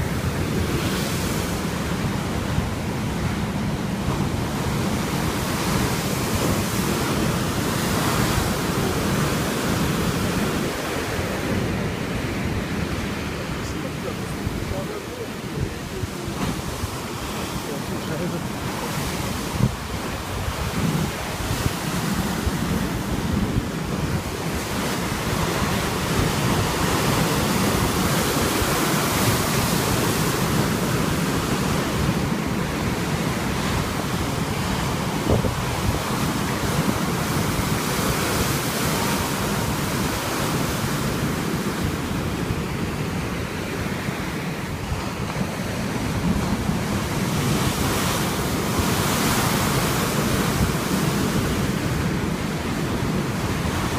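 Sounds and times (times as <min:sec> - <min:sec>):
sea waves washing onto shore: 0:00.0 - 0:53.9
wind buffeting microphone: 0:00.0 - 0:53.9.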